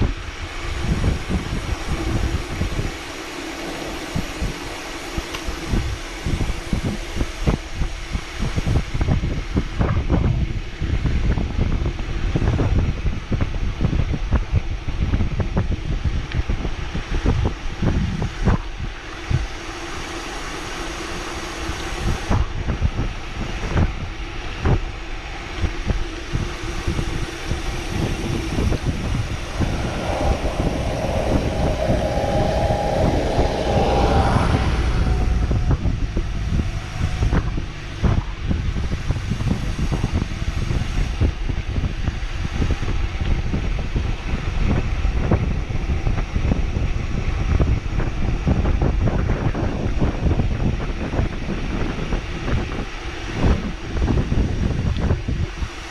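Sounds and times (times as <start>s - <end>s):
wind buffeting microphone: 0.0s - 19.4s, 22.0s - 55.9s
steady hum: 26.0s - 39.1s
high whine: 26.0s - 39.4s.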